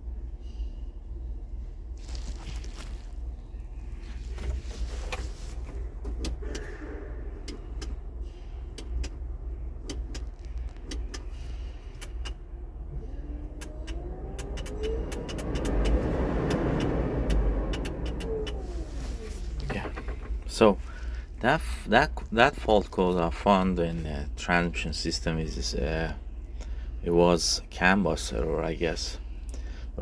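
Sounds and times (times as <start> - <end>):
vehicle rumble: 0.0 - 30.0
sharp clicks: 13.6 - 18.6.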